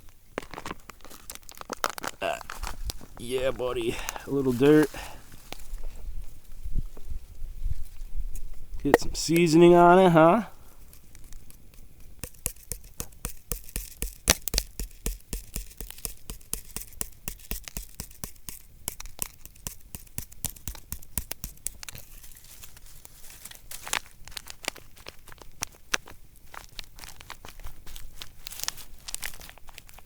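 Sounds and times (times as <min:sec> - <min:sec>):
packaging crinkling and tearing: 0:00.4 - 0:05.7, 0:21.8 - 0:30.0.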